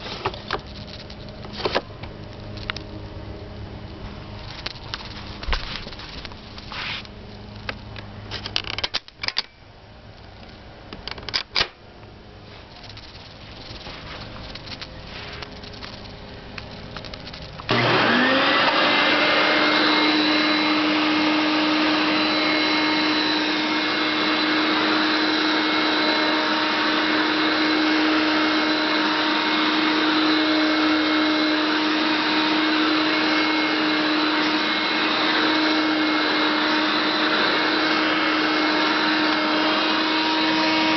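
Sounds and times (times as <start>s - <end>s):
clicks and knocks of handling: 10.2s - 11.8s
vacuum cleaner motor running: 17.6s - 40.9s.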